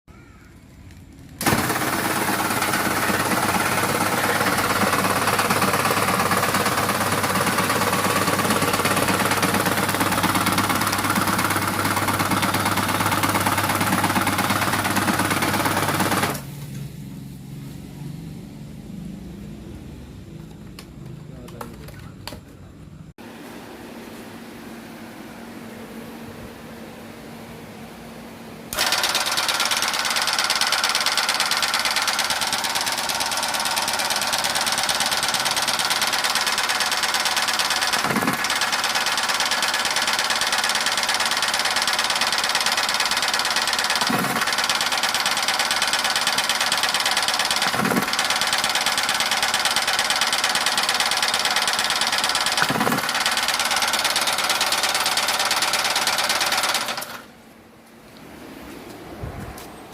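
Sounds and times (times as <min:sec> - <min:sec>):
machine mechanical clatter: 0:00.7 - 0:17.0, 0:28.7 - 0:57.3.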